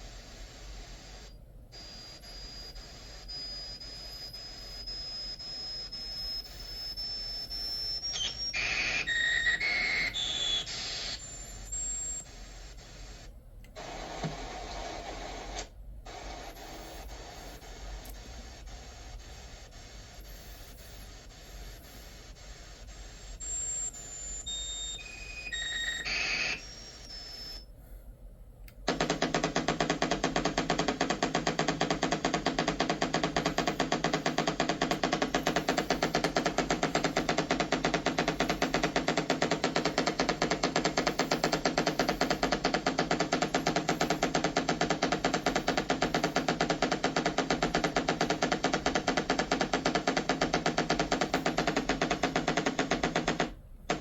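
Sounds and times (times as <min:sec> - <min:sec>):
electronic whistles and beeps: 0:01.8 - 0:12.5, 0:23.2 - 0:27.7, 0:29.0 - 0:53.5
loud fast pulsing buzz: 0:28.9 - 0:54.0
short stepped tones: 0:28.9 - 0:54.0.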